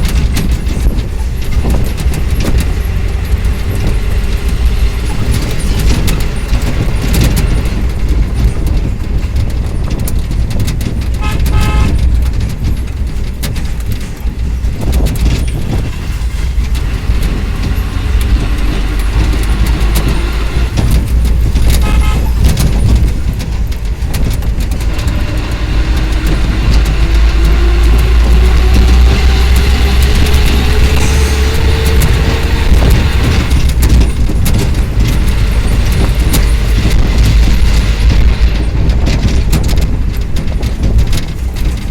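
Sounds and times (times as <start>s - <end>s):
engine rumbling: 0.0s - 41.9s
horn toot: 11.2s - 12.1s, 21.5s - 22.8s.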